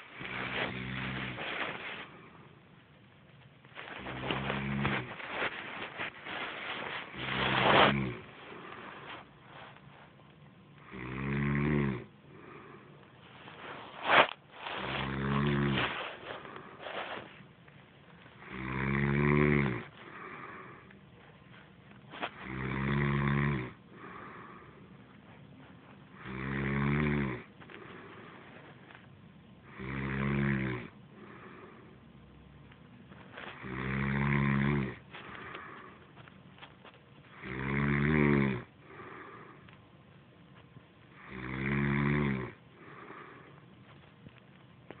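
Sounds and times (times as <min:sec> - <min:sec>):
woman snoring: 0:10.8 - 0:13.0, 0:14.7 - 0:16.8, 0:18.4 - 0:20.9, 0:22.2 - 0:24.8, 0:26.1 - 0:28.4, 0:29.6 - 0:32.0, 0:33.5 - 0:36.0, 0:37.3 - 0:39.7, 0:41.1 - 0:43.6.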